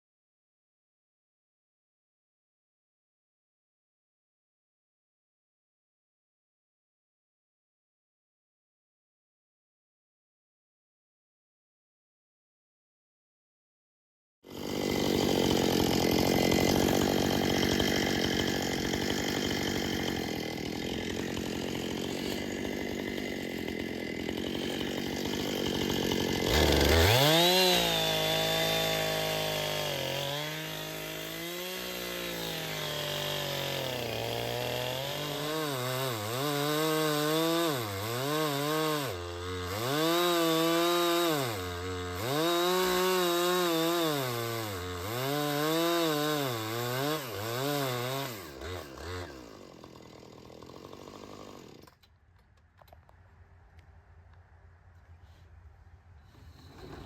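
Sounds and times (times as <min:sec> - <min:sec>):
chainsaw cutting through log: 0:14.5 - 0:52.1, 0:56.3 - 0:57.0
chainsaw engine wavering: 0:14.5 - 0:52.1, 0:56.4 - 0:57.0.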